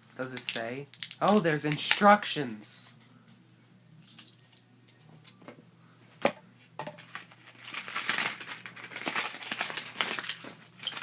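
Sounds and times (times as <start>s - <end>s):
packaging crinkling and rustling: 6.9s - 11.0s.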